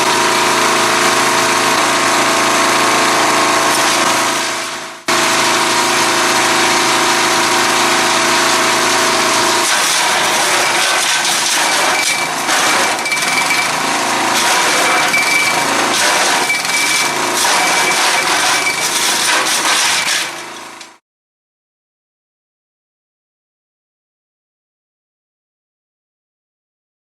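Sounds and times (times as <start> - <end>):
wood chipper engine running: 0.0 - 21.0.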